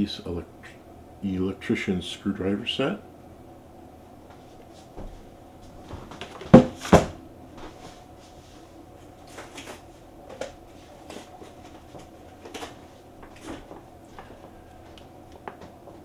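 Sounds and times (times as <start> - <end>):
loud knocks of packaging: 6.0 - 7.2.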